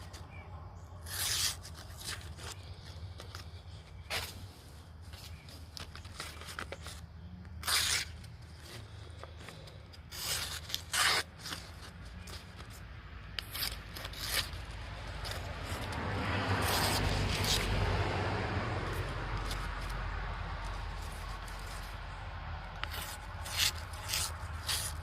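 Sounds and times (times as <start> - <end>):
knife blade scraping: 1.0 - 2.6, 7.6 - 8.3, 9.4 - 12.7, 13.4 - 15.9, 22.8 - 25.0.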